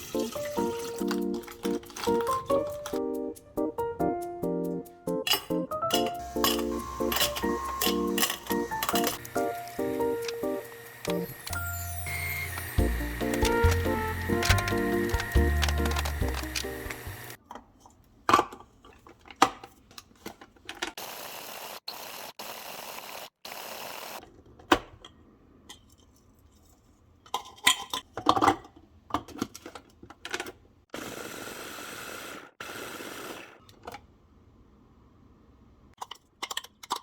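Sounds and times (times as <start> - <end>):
utensils and dishes clinking: 0.0 - 3.0, 5.2 - 17.4, 27.3 - 29.8.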